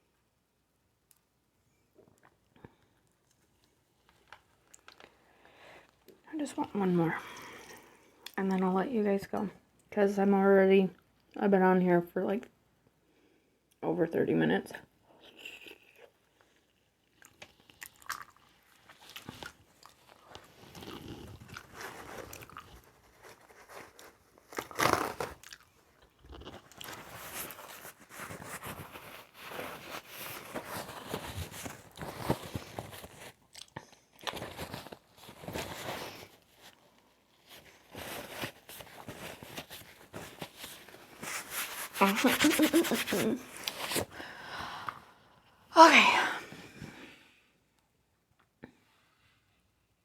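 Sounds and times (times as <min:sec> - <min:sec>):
close chewing and biting: 0:17.0 - 0:28.5, 0:30.2 - 0:34.6.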